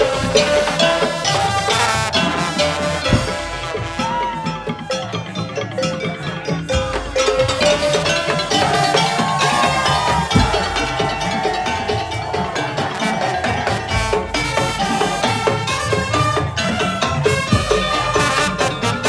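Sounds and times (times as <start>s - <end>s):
deep drum strokes: 0.0s - 4.8s, 6.8s - 15.8s
wooden and drum percussion: 0.0s - 19.0s.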